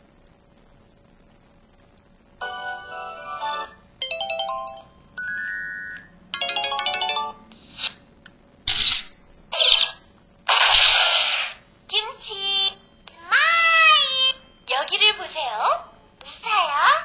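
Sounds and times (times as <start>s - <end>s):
phone ringtone jingles: 3.4s - 7.5s.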